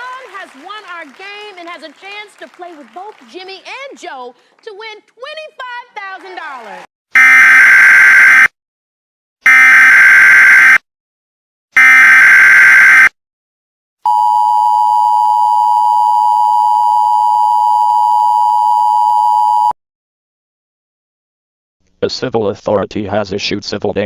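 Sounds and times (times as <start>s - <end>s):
two-tone attention signal: 9.5s - 10.8s.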